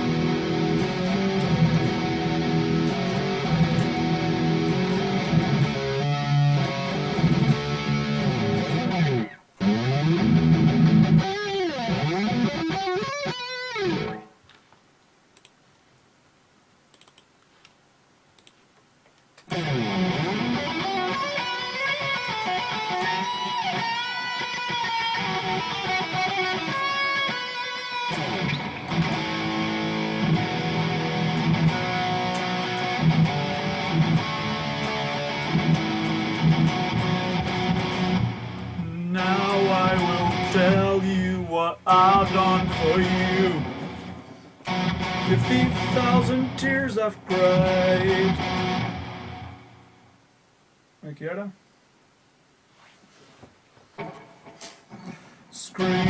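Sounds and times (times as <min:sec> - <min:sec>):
electric guitar with pitch bends: 0:00.0 - 0:14.3, 0:19.5 - 0:50.1, 0:54.0 - 0:56.0.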